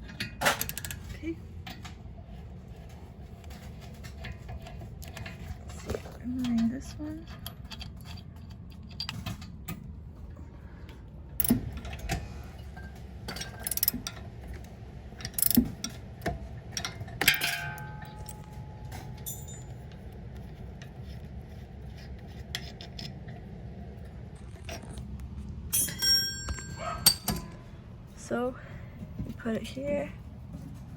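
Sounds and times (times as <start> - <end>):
metal tools clinking and knocking: 0.0 - 1.9, 3.5 - 9.9, 11.4 - 20.2, 25.7 - 27.7
steady low hum: 0.0 - 30.9.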